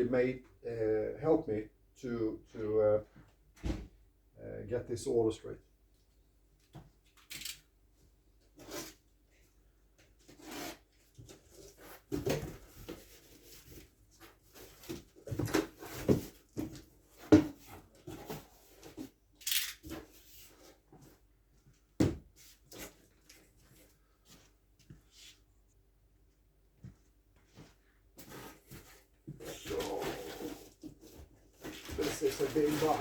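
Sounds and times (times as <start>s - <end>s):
cardboard box being handled: 28.2s - 33.0s.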